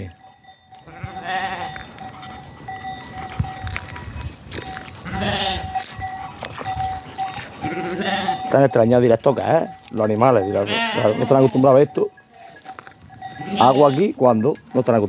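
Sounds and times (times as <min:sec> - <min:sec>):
livestock bleating: 0:00.8 - 0:01.9, 0:05.0 - 0:05.8, 0:07.4 - 0:08.6, 0:10.3 - 0:14.4.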